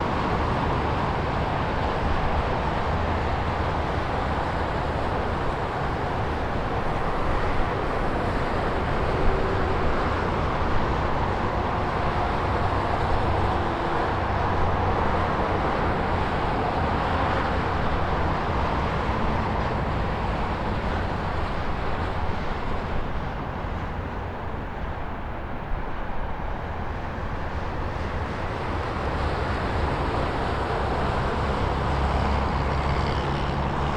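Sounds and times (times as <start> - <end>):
low traffic rumble: 0.0 - 33.9
cars passing at speed: 26.9 - 33.9.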